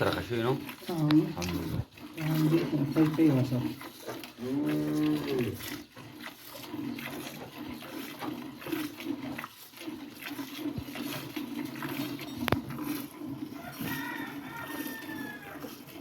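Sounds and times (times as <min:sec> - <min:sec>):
cow mooing: 0:04.4 - 0:05.7.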